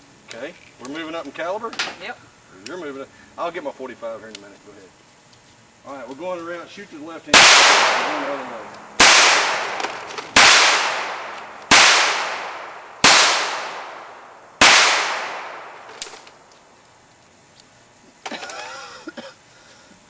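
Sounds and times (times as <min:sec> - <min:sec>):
handgun shots echoing: 0:07.4 - 0:16.3.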